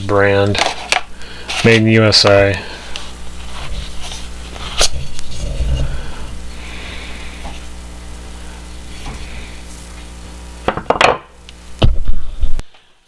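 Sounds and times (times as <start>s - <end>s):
faint handling sounds: 0.0s - 6.4s
steady low hum: 0.0s - 13.0s.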